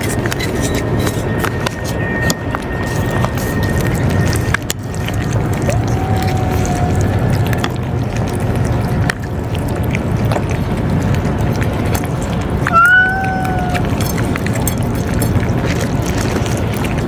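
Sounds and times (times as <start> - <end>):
low background rumble: 3.8 - 17.0
cat meowing: 12.6 - 14.0.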